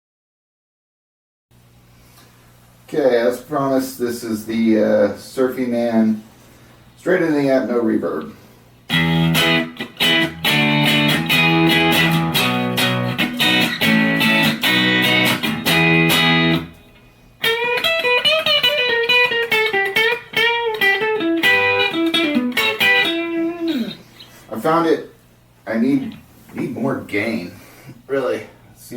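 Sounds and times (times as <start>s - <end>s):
electric guitar strummed chords: 8.9s - 24.1s
electric guitar lead line: 8.9s - 24.4s.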